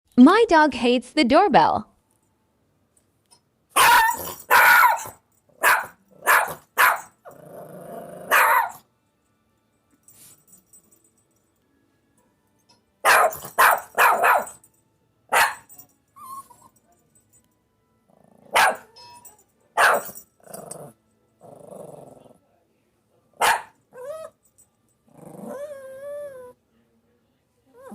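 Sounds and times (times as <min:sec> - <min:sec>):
dog barking: 0:03.8 - 0:07.2, 0:08.3 - 0:08.8, 0:13.0 - 0:14.6, 0:15.3 - 0:15.7, 0:18.5 - 0:19.0, 0:19.8 - 0:20.2, 0:23.4 - 0:23.8
dog growling: 0:07.2 - 0:08.4, 0:18.1 - 0:18.6, 0:20.4 - 0:22.5, 0:25.1 - 0:26.6.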